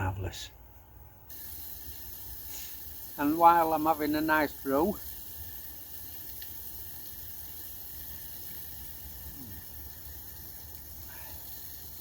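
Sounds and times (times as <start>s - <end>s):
gas stove burner hissing: 1.2s - 12.0s.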